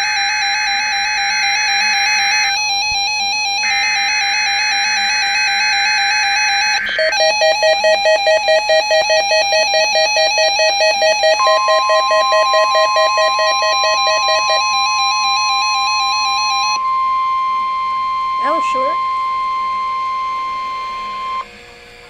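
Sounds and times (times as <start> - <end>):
alarm beeping in fast pulses: 0.0 - 21.4
steady warning alarm tone: 0.0 - 22.0
data tones: 1.2 - 21.5.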